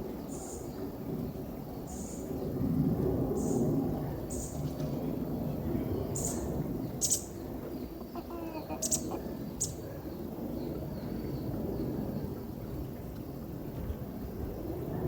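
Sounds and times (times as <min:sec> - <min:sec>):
birds chirping: 0:06.2 - 0:10.3.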